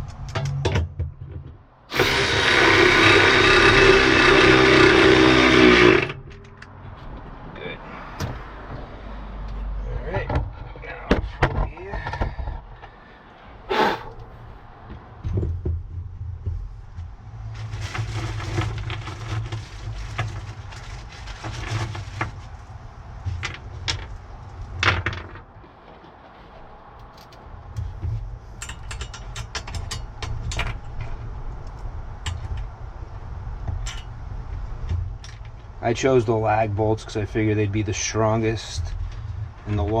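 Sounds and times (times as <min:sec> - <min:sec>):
power driver driving bolts: 0:01.9 - 0:06.8
tool handling clicks and knocks: 0:27.0 - 0:32.7.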